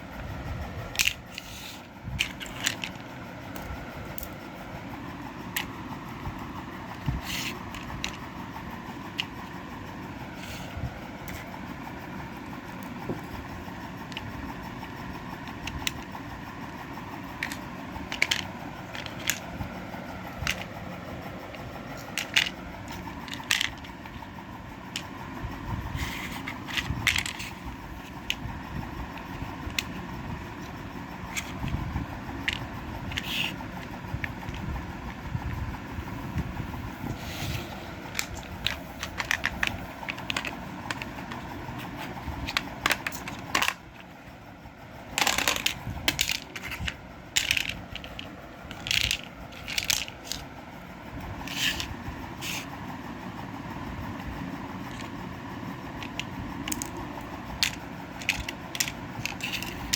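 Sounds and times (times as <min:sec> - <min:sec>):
steady background noise: 0:00.0 - 0:59.9
clicks and taps of small plastic parts: 0:00.9 - 0:04.4, 0:06.9 - 0:08.2, 0:14.1 - 0:14.8, 0:17.3 - 0:19.6, 0:20.3 - 0:20.7, 0:21.9 - 0:24.2, 0:29.1 - 0:30.1, 0:32.4 - 0:34.8, 0:38.1 - 0:44.1, 0:45.2 - 0:50.4, 0:56.0 - 0:59.9.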